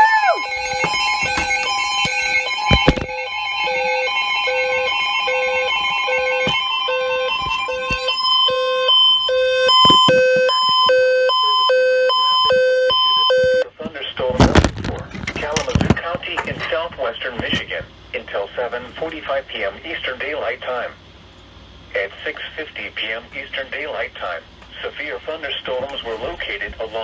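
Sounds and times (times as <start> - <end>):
weather radio alarm beeps: 0.0 - 13.6.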